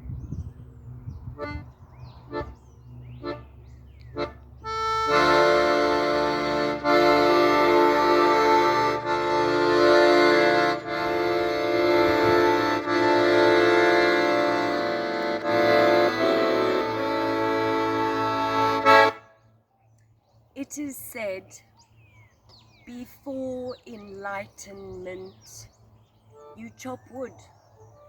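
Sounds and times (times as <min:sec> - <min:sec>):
accordion playing chords: 0:01.3 - 0:19.4, 0:26.3 - 0:27.0.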